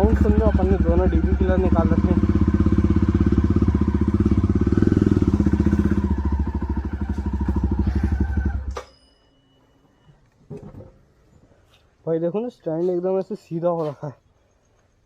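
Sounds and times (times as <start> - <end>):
motorcycle engine idling: 0.0 - 8.8.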